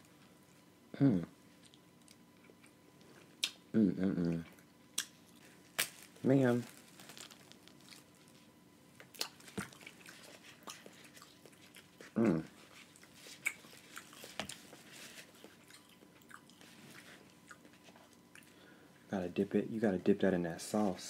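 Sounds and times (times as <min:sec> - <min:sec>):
chewing and smacking: 0:01.6 - 0:03.6, 0:07.2 - 0:18.6.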